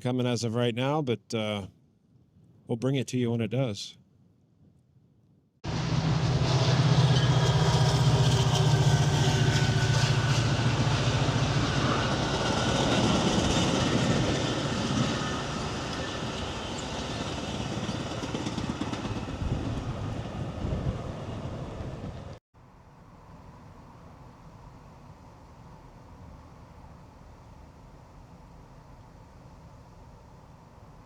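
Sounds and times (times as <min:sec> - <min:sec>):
locomotive engine hum: 0:05.6 - 0:22.4
train wheels rushing on rails: 0:05.7 - 0:22.4.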